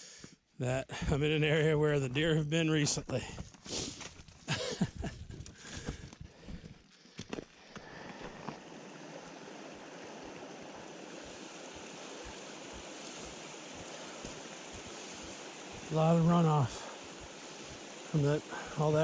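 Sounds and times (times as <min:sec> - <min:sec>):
stream rushing: 0:07.9 - 0:19.0
footsteps: 0:10.2 - 0:18.8.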